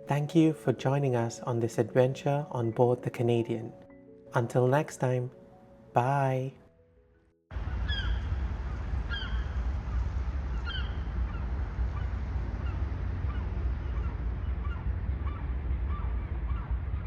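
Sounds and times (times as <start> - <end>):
steady low rumble: 7.5 - 17.0
geese honking: 7.6 - 17.0.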